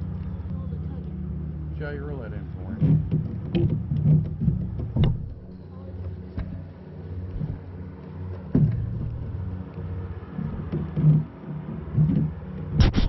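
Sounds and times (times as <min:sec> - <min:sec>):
boat motor running: 0:00.0 - 0:13.0
short knocks and thumps: 0:02.7 - 0:05.5, 0:08.5 - 0:09.3.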